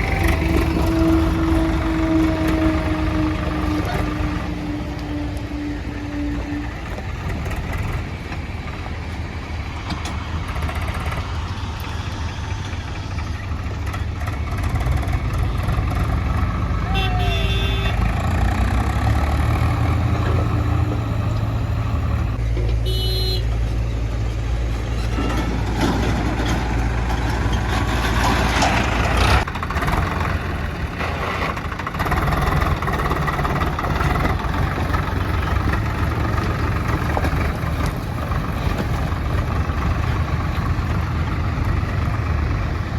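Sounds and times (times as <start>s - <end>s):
heavy diesel engines running: 0.0s - 42.9s.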